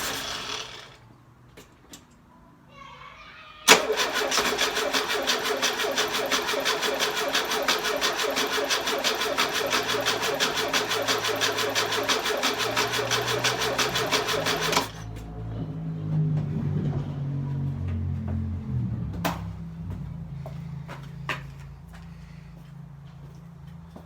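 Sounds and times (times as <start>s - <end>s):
electric starter cranking engine: 0.0s - 1.1s, 3.7s - 15.2s.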